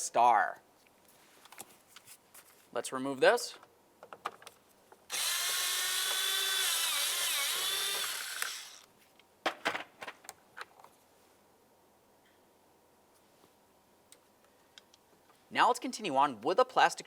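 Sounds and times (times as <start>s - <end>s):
cordless drill whining: 5.1s - 8.9s.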